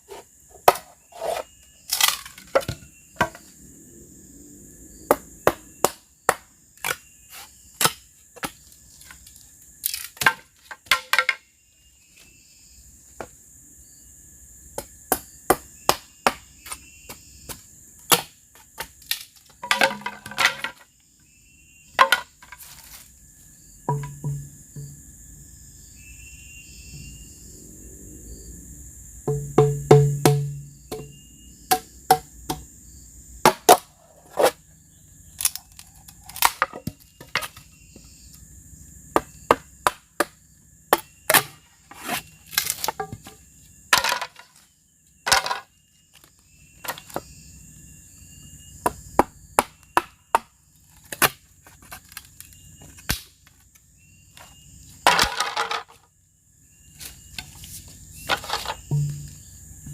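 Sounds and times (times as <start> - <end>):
tools striking bamboo: 5.1 - 9.2, 9.8 - 11.4, 17.5 - 20.8, 23.9 - 25.0, 29.3 - 32.6, 35.4 - 37.6, 39.2 - 41.6, 58.3 - 59.9.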